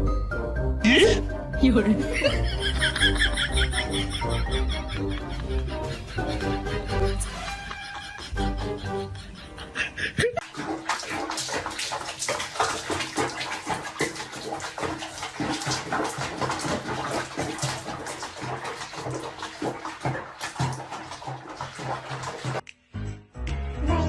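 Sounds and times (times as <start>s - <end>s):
water splashing in a tub: 10.4s - 22.6s.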